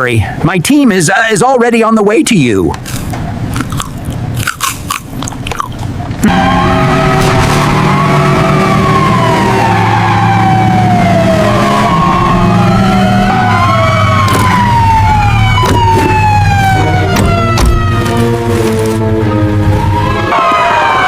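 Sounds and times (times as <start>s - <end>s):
police siren wailing: 6.2s - 21.0s.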